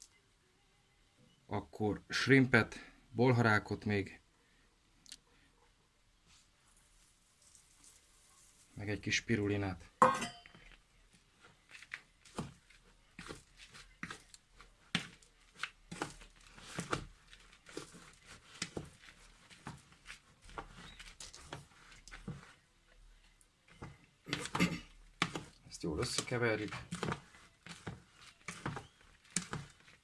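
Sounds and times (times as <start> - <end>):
dry food mix rustling: 11.4 - 22.6, 23.7 - 30.0.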